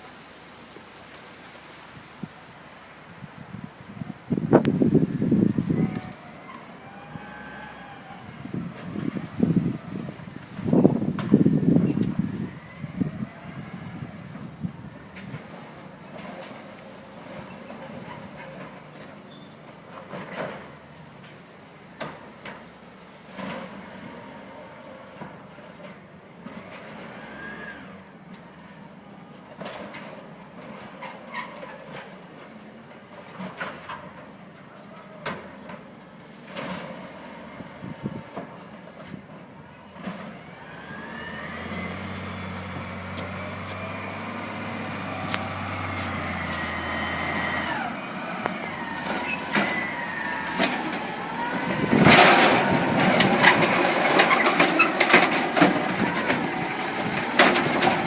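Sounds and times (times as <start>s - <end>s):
truck engine revving: 4.5s - 14.4s, 40.0s - 58.0s
high squeaky whine: 45.4s - 53.6s.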